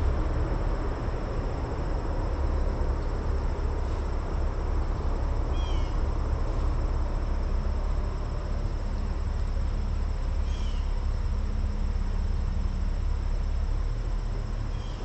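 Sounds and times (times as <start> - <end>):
high insect drone: 0.0 - 15.0
rushing outdoor noise: 0.0 - 15.0
bird chirp: 5.5 - 6.0, 14.7 - 15.0.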